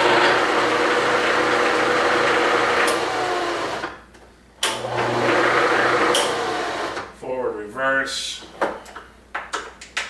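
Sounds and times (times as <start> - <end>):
milling machine whirring: 0.0 - 3.9, 4.6 - 7.1.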